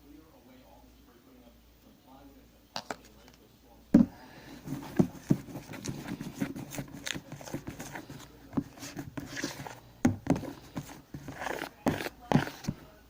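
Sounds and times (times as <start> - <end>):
spoon stirring slime in bowl: 4.8 - 12.9.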